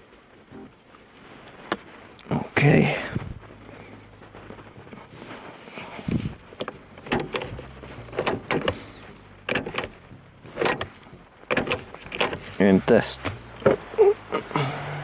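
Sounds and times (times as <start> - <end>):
mechanical clicks and clunks: 0.4 - 0.8, 4.1 - 14.5.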